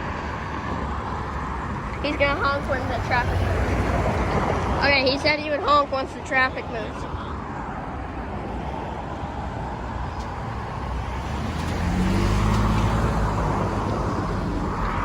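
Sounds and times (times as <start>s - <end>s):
road traffic: 0.0s - 15.0s
vehicle engine approaching: 9.9s - 15.0s.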